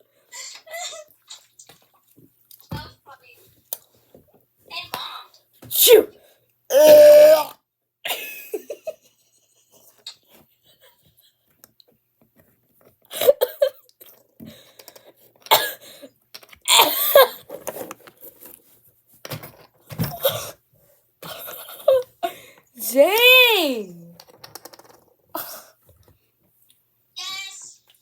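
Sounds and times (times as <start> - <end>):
giggling and laughter: 8.1 - 11.5, 21.2 - 22.3.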